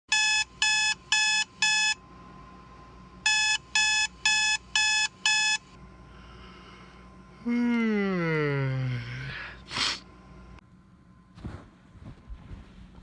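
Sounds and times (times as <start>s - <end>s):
electronic alarm beeping: 0.1s - 2.0s, 3.2s - 5.8s.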